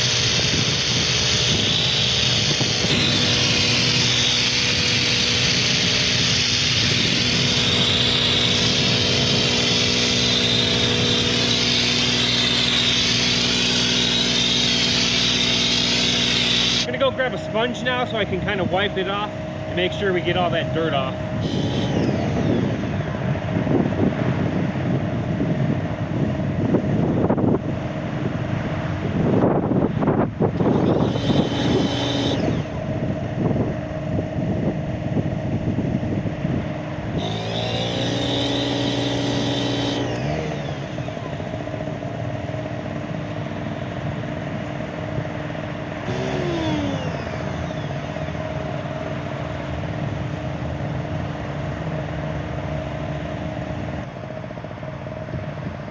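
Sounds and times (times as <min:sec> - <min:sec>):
second machine hum: 0:00.0 - 0:24.6, 0:30.4 - 0:55.3
portable generator running: 0:00.0 - 0:28.1, 0:29.8 - 0:55.9.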